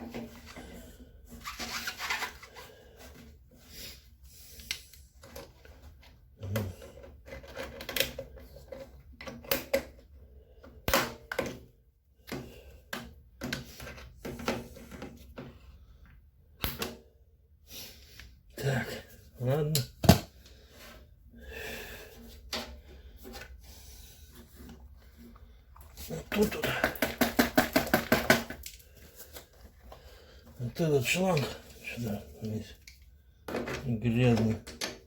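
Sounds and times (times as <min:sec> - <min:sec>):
clicks and rubbing of plastic parts: 0:04.5 - 0:11.6, 0:24.3 - 0:35.0.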